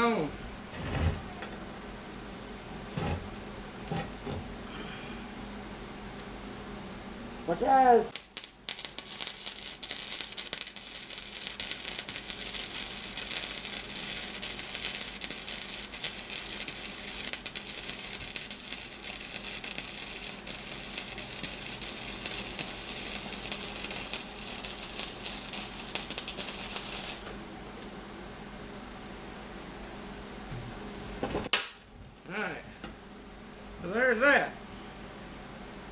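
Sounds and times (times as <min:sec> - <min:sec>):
welding arc crackling: 0:08.1 - 0:27.4.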